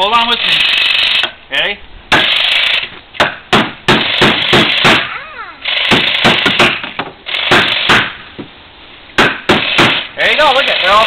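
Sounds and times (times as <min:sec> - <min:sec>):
hammer striking nails into wood: 0:03.2 - 0:05.1, 0:05.9 - 0:08.2, 0:09.2 - 0:10.1.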